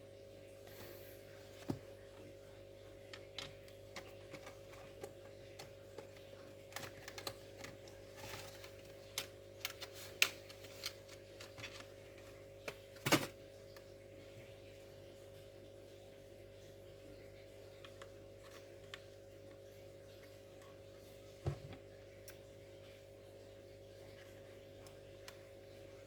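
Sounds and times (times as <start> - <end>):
steady electrical hum: 0.0 - 26.0.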